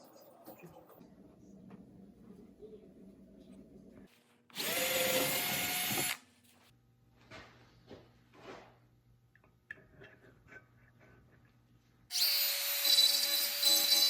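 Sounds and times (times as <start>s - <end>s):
power tool motor running: 4.6s - 6.2s.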